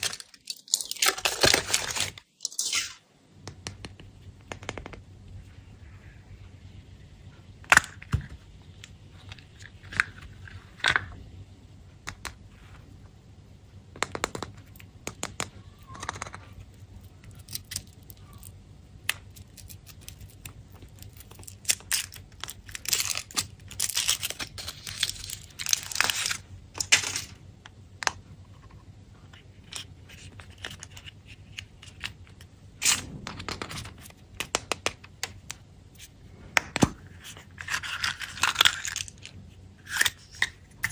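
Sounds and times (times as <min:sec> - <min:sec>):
candy wrappers crinkling: 0:00.0 - 0:03.0, 0:16.0 - 0:27.3, 0:29.3 - 0:35.4, 0:36.8 - 0:40.9.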